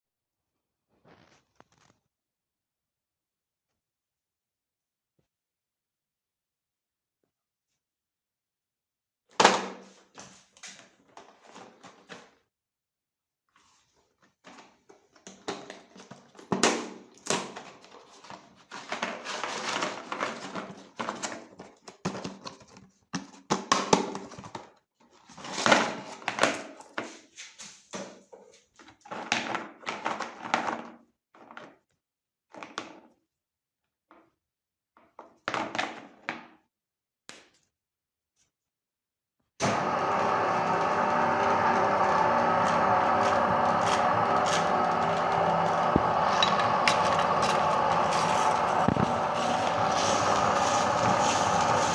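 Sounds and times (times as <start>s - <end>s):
cookies crunching in meat grinder: 39.6s - 51.9s.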